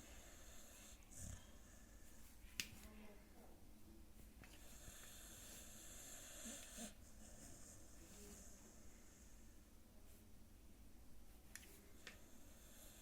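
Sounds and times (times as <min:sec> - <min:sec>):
dog snoring faintly: 0:00.0 - 0:02.3, 0:04.6 - 0:09.6, 0:12.0 - 0:13.0.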